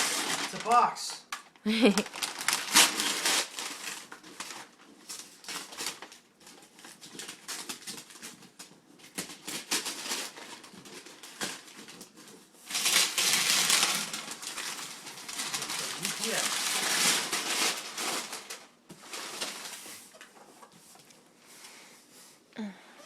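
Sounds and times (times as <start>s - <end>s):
gift packaging crinkling and rustling: 0.0s - 21.2s.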